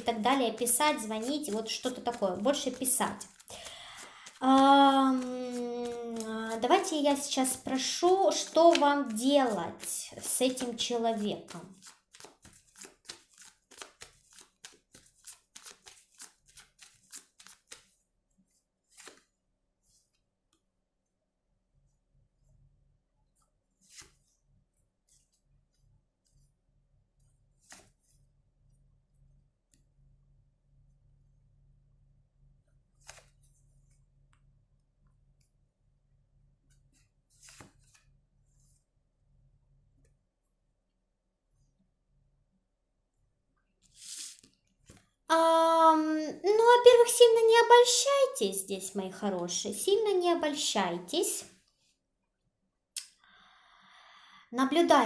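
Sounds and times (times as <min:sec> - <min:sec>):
cards being shuffled: 0:00.0 - 0:18.0, 0:18.9 - 0:19.3, 0:23.8 - 0:24.3, 0:27.6 - 0:28.0, 0:33.0 - 0:33.4, 0:36.8 - 0:38.1, 0:43.9 - 0:45.1.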